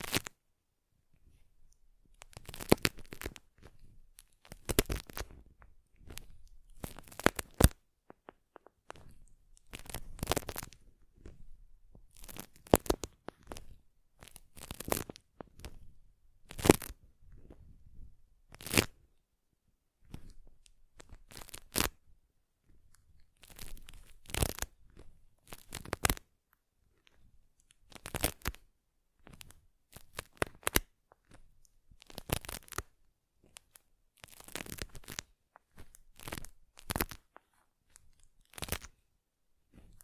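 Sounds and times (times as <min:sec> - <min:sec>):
scratching and rubbing strokes: 0:01.1 - 0:19.1.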